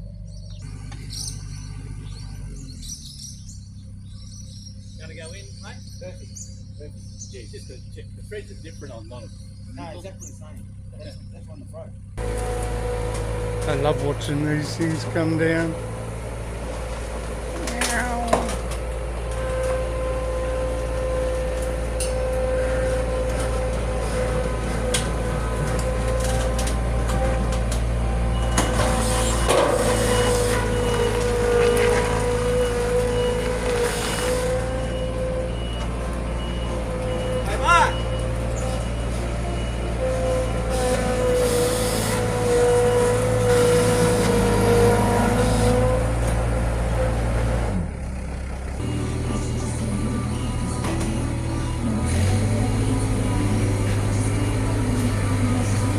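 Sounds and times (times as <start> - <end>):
diesel engine whining: 0.0 - 55.9
warning beeps: 34.6 - 40.7.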